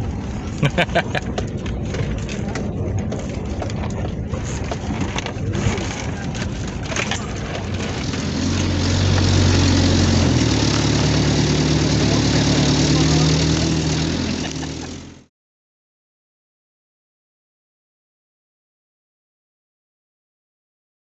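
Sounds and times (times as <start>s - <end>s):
vehicle engine humming: 0.0s - 15.3s.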